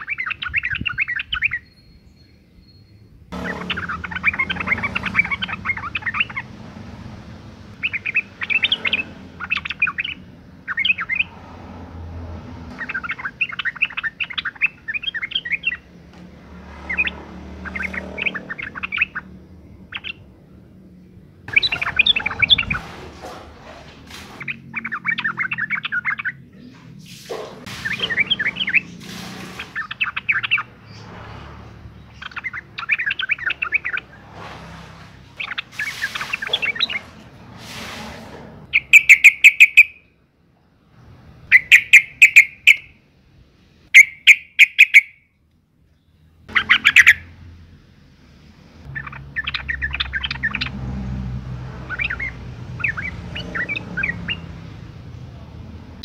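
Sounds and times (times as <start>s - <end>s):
bird chattering calls: 0.0s - 1.8s, 3.3s - 6.6s, 7.7s - 11.3s, 12.7s - 15.9s, 16.9s - 20.3s, 21.5s - 22.9s, 24.3s - 26.6s, 27.3s - 31.0s, 32.0s - 34.2s, 35.4s - 37.2s, 38.7s - 40.0s, 41.5s - 42.9s, 44.0s - 45.2s, 46.5s - 47.3s, 48.9s - 50.8s, 51.9s - 54.5s.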